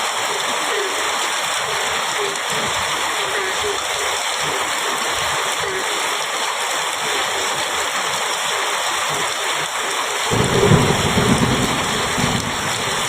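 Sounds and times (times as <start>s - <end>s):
heavy rain on metal roof: 0.0s - 13.0s
low rumble of thunder: 10.3s - 13.0s.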